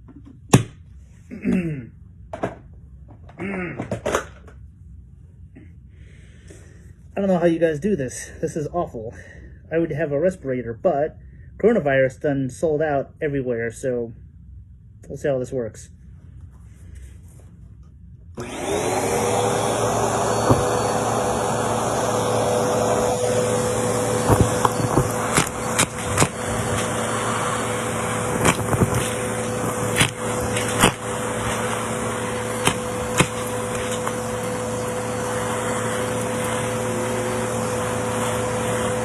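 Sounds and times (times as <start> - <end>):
vacuum cleaner motor running: 18.4 - 39.0.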